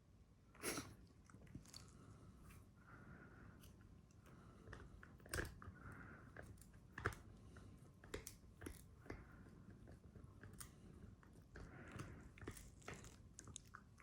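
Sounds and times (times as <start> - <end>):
dog chewing crunchy treat: 3.8 - 14.0.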